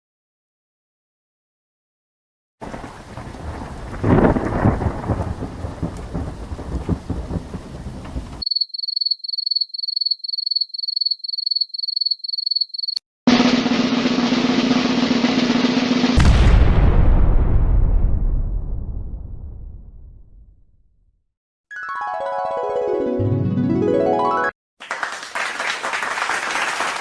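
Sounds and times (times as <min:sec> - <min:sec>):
noisy rumble with crackles: 0:02.6 - 0:08.4
loud harsh noise: 0:13.3 - 0:16.2.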